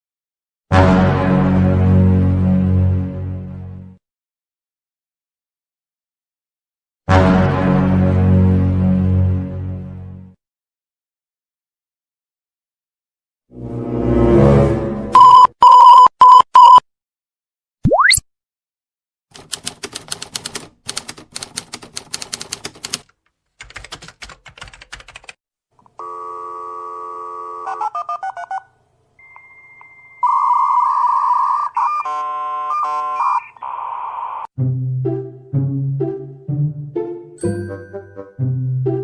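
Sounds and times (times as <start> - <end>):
telephone ringing tone: 26.0 - 34.5.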